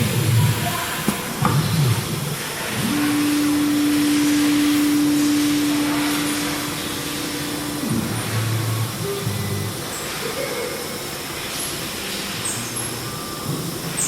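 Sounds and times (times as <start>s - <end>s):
axis motor whines: 1.5s - 14.0s
router spindle whine: 2.6s - 10.1s.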